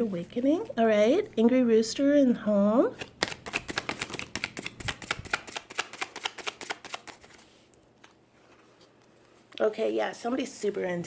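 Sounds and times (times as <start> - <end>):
cards being shuffled: 3.0 - 8.7.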